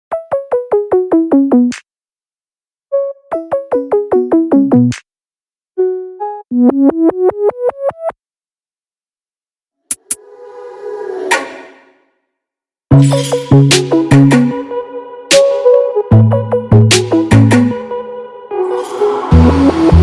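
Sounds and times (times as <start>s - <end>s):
electronic keyboard music: 2.9s - 4.9s, 5.8s - 8.2s, 12.9s - 20.0s
brief sharp hit: 10.9s - 12.0s.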